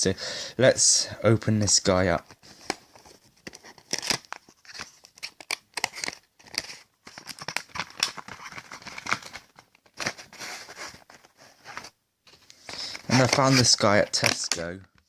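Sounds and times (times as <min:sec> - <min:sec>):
packaging crinkling and tearing: 0:02.5 - 0:11.9.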